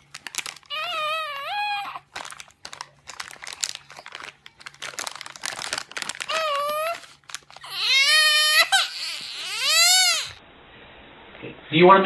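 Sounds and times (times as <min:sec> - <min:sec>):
crinkling crackling clicks: 0:00.0 - 0:00.8, 0:02.0 - 0:07.7
young child crying: 0:00.7 - 0:02.1, 0:06.2 - 0:10.4.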